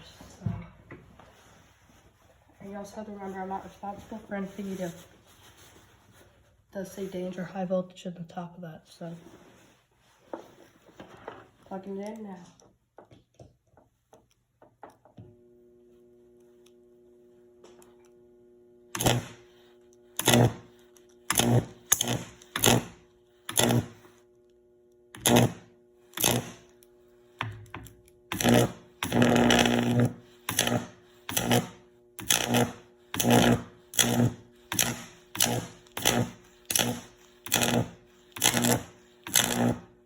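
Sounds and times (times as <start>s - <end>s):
electric arcs crackling: 19.0s - 19.5s, 20.2s - 20.7s, 21.3s - 24.0s, 25.2s - 26.7s, 28.3s - 39.9s.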